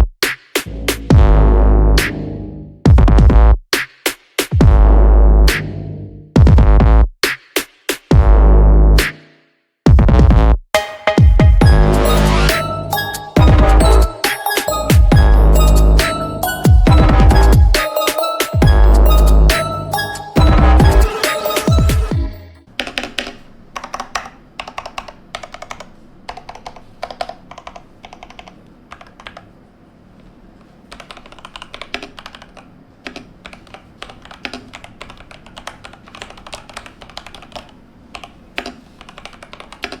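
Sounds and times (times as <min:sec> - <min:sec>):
electronic music: 0:10.8 - 0:22.7
typing on mechanical keyboard: 0:22.8 - 0:29.5, 0:30.9 - 0:40.0.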